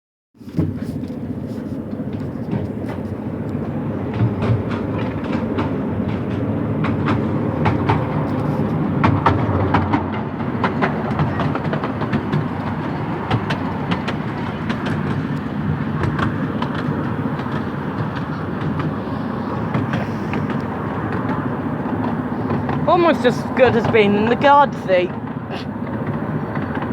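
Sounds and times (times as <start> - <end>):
train wheels rumbling: 0.4 - 26.9
wheels clicking over rail joints: 0.4 - 26.9.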